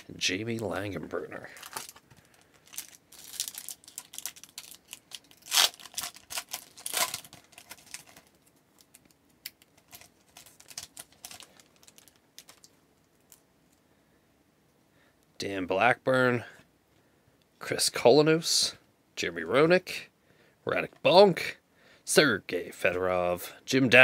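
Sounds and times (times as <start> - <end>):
wrapper crinkling: 1.3 - 13.4.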